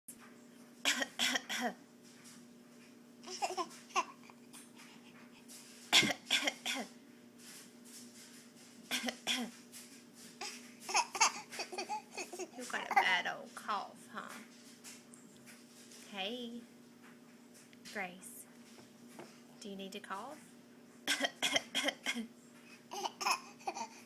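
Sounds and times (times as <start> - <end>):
faint steady hum: 0.1 - 24.0
child coughing: 6.0 - 7.0, 10.9 - 13.2, 21.1 - 22.3, 22.9 - 24.0.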